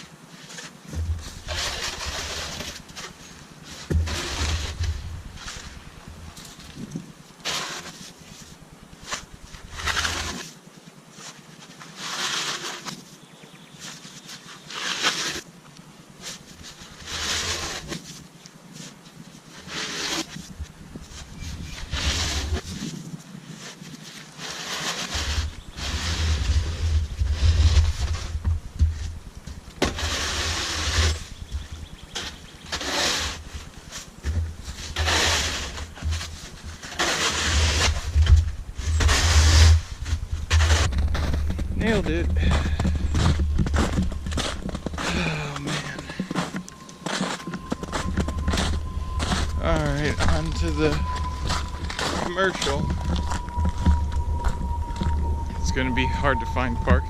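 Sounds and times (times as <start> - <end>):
snow shovel scraping pavement: 0.3 - 5.8, 6.5 - 10.6, 11.2 - 13.0, 13.8 - 15.4, 16.2 - 18.2, 19.6 - 20.5, 21.1 - 28.4, 29.8 - 31.3, 32.1 - 53.3
low rumble: 3.9 - 7.0, 25.5 - 29.8, 37.5 - 57.0.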